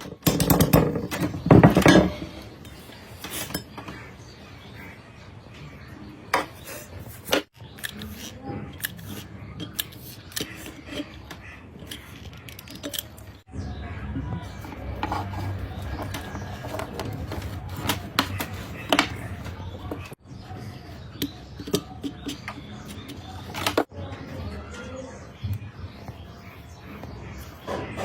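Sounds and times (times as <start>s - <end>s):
hard objects clattering: 0.0s - 4.2s, 14.1s - 23.9s.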